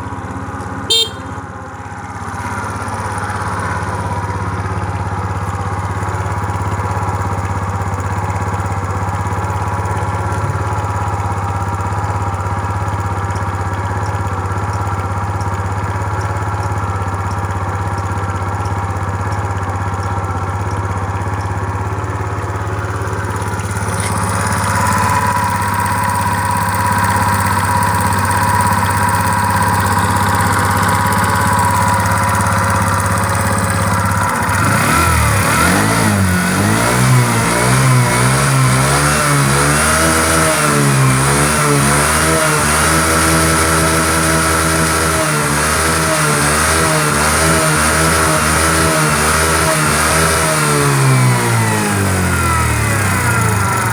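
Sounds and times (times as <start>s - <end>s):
scooter engine idling and revving: 0.0s - 53.9s.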